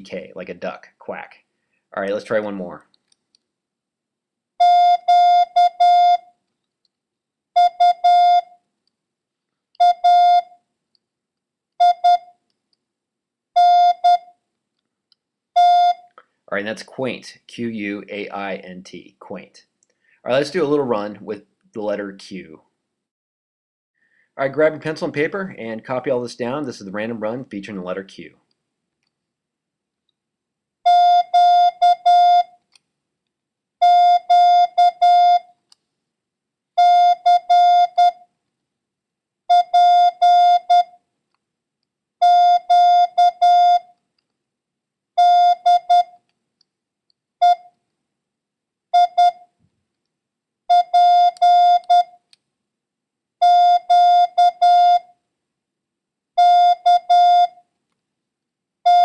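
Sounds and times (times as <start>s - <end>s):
morse code beeps: 4.6s - 6.2s, 7.6s - 8.5s, 9.8s - 10.5s, 11.8s - 12.3s, 13.6s - 14.3s, 15.6s - 16.0s, 30.9s - 32.5s, 33.8s - 35.4s, 36.8s - 38.2s, 39.5s - 40.9s, 42.2s - 43.8s, 45.2s - 46.2s, 47.4s - 47.7s, 49.0s - 49.4s, 50.7s - 52.2s, 53.4s - 55.0s, 56.4s - 57.6s.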